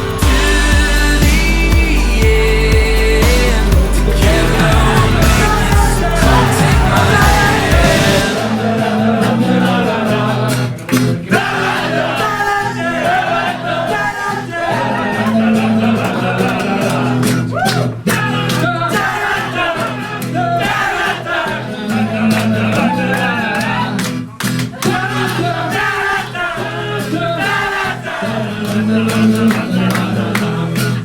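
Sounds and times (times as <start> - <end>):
bass guitar: 0.0 - 11.5
person singing: 0.0 - 24.0, 24.8 - 31.0
guitar: 0.0 - 31.0
pop rock song: 0.0 - 31.0.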